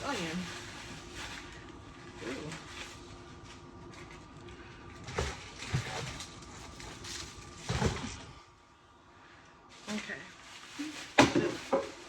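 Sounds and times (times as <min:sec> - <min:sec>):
faint steady hum: 0:00.0 - 0:11.1
groceries knocking on surface: 0:11.1 - 0:12.0.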